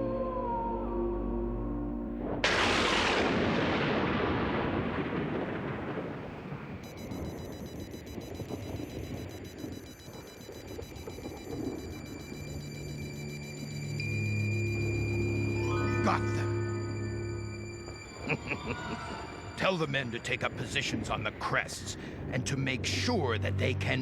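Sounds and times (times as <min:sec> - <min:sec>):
music: 0:00.0 - 0:02.4, 0:12.2 - 0:20.3
loud rumbling explosion: 0:02.2 - 0:08.3.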